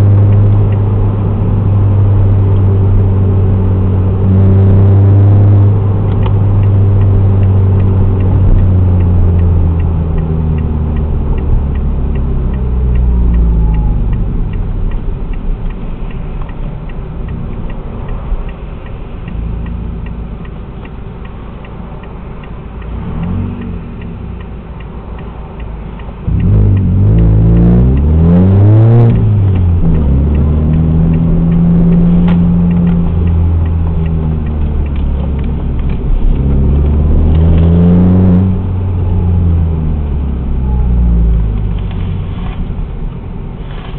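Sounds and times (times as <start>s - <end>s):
car engine revving: 0.0s - 20.9s, 22.7s - 43.9s.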